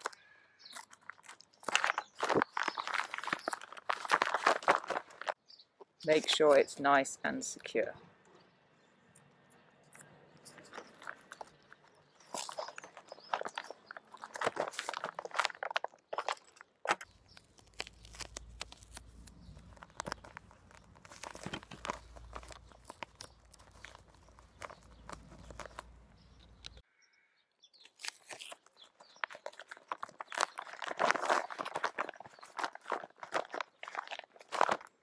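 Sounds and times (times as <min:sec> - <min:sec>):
plastic bag crinkling: 0:00.0 - 0:05.4, 0:10.3 - 0:26.8, 0:27.9 - 0:35.0
duct tape tearing: 0:09.9 - 0:25.9, 0:27.8 - 0:34.9.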